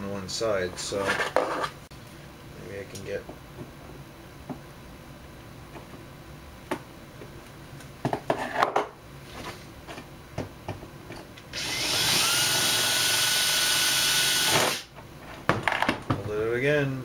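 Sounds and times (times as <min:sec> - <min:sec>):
electric drill drilling metal: 0:11.5 - 0:14.9.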